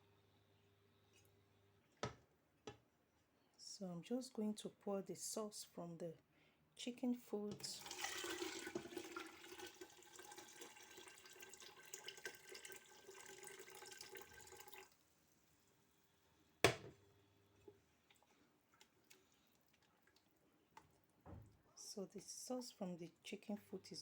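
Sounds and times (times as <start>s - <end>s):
broth pouring into pot: 7.8s - 15.1s.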